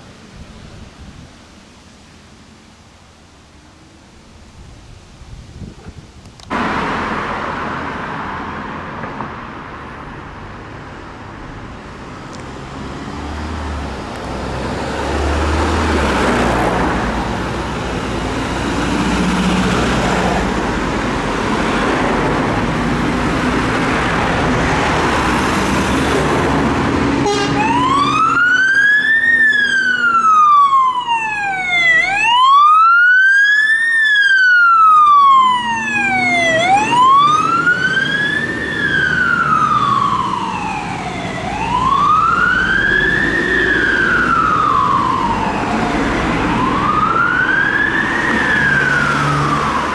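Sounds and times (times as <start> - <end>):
fire engine engine and road noise: 0.0 - 49.9
electronic siren wailing: 27.2 - 49.9.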